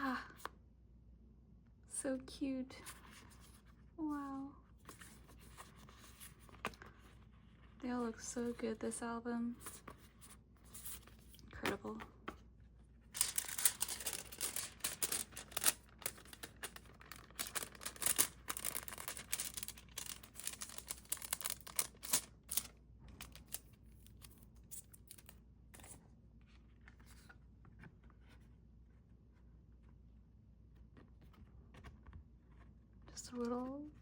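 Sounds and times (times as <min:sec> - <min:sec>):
paper and card rustling: 0:02.8 - 0:12.4, 0:13.0 - 0:26.0.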